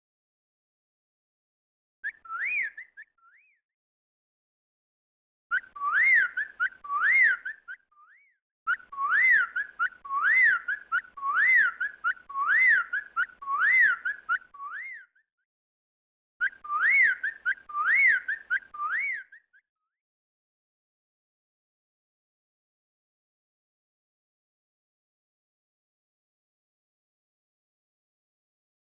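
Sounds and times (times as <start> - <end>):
bird whistled call: 2.0 - 3.6, 5.5 - 15.2, 16.4 - 19.6.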